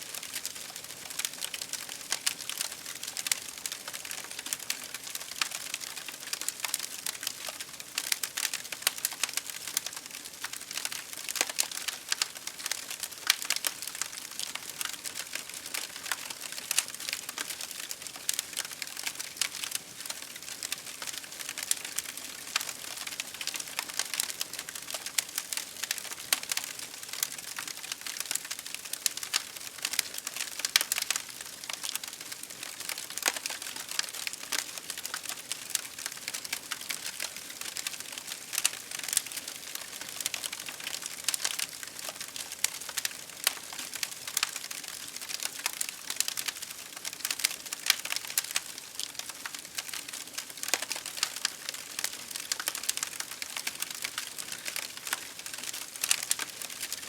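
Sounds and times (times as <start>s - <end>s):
campfire crackling: 0.1s - 57.0s.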